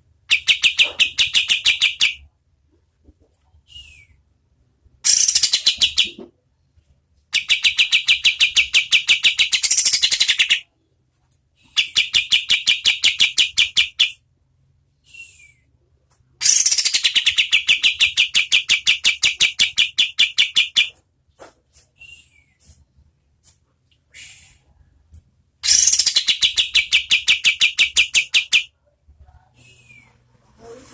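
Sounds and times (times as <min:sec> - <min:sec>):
bird rapid trill: 0:05.1 - 0:06.0.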